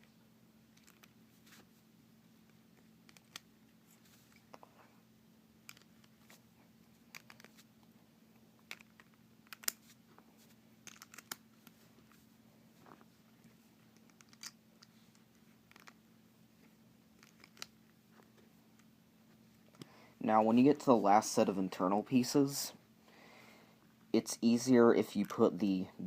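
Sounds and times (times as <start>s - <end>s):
plastic pieces clicking: 0.8s - 1.2s, 3.1s - 3.4s, 5.6s - 6.2s, 7.1s - 7.6s, 8.6s - 9.9s, 10.8s - 11.4s, 14.0s - 14.6s, 15.7s - 16.0s, 17.2s - 17.8s.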